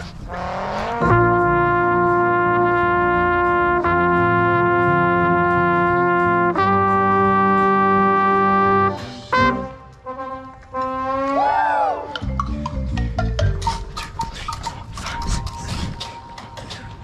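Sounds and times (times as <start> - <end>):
brass band sustained chords: 0.0 - 12.1
trumpet: 0.0 - 12.2.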